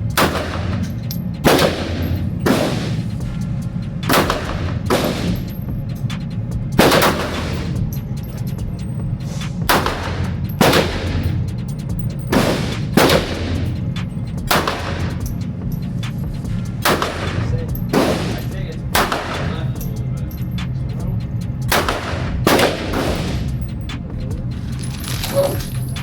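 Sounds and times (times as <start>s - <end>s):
steady low hum: 0.0s - 26.0s
pistol shots with echo: 0.1s - 3.1s, 4.1s - 5.5s, 6.8s - 7.8s, 9.7s - 11.4s, 12.3s - 13.8s, 14.5s - 15.3s, 16.8s - 19.7s, 21.7s - 23.6s.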